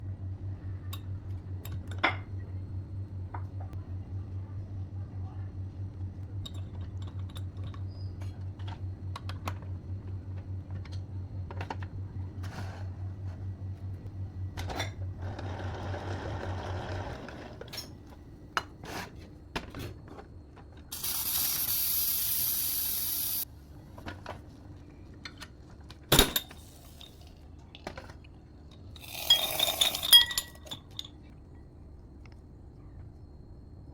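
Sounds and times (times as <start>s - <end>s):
hiss: 20.9s - 23.4s
metal and glass clinks: 29.1s - 31.2s.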